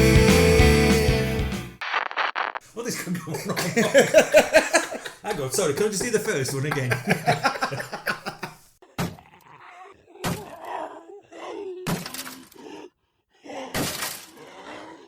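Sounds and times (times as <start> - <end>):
voices: 2.7 - 8.6.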